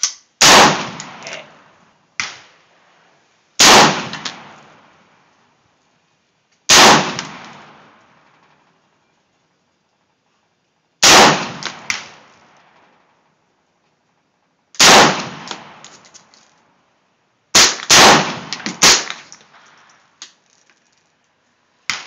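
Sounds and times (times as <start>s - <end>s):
rifle shots echoing: 0.0s - 2.6s, 3.6s - 5.0s, 6.7s - 8.3s, 11.0s - 13.0s, 14.8s - 16.0s, 17.5s - 20.0s.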